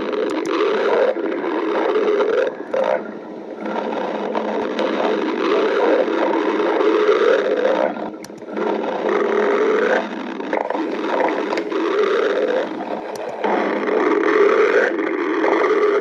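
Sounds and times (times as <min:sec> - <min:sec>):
stomach growling: 0:00.0 - 0:16.0.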